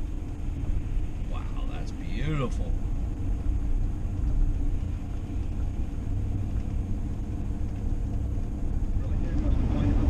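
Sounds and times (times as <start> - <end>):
vehicle driving rumble: 0.0 - 10.0.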